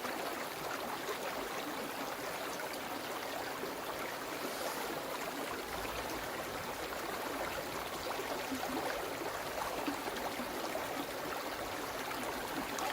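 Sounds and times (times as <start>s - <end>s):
stream babbling over stones: 0.0s - 12.9s.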